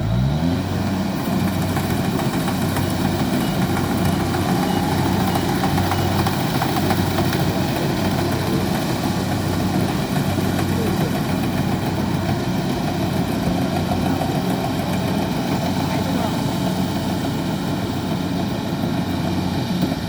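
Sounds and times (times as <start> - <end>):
combine harvester engine running: 0.0 - 20.0.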